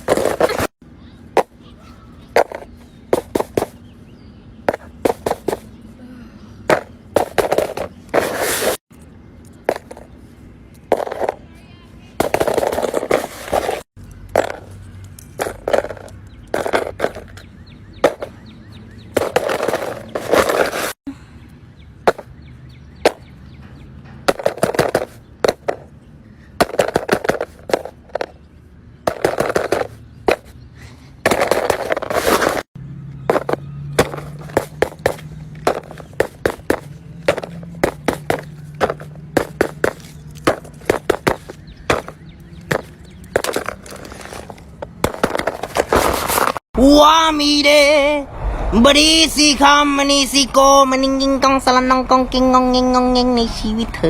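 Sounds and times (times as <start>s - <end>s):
scraping rustling sweeps: 7.2s - 8.8s, 9.7s - 17.3s, 19.4s - 21.0s, 31.3s - 32.7s, 33.3s - 44.8s, 45.4s - 46.6s.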